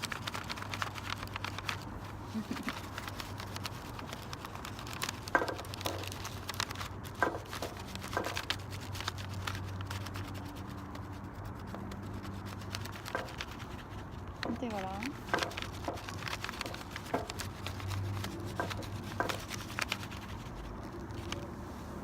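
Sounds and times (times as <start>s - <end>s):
crayon scratching on paper: 0.0s - 21.4s
paper and leaf crinkling: 0.0s - 22.0s.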